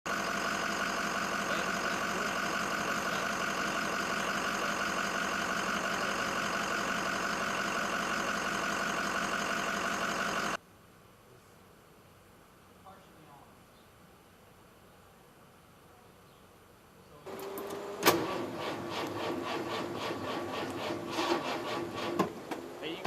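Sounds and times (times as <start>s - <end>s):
mechanical drone of motor running: 0.1s - 10.6s, 17.3s - 22.2s.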